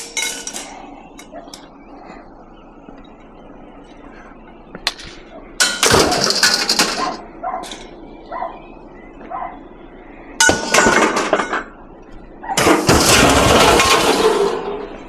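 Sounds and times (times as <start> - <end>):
scrap metal clattering onto pile: 0.0 - 0.8, 5.6 - 7.8, 10.4 - 11.7, 12.6 - 14.9.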